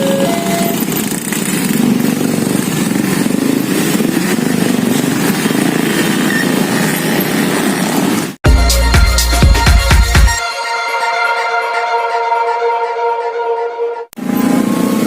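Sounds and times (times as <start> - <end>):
motorcycles: 0.0 - 8.4, 14.2 - 15.0
road traffic rumble: 0.0 - 8.9, 13.0 - 15.0.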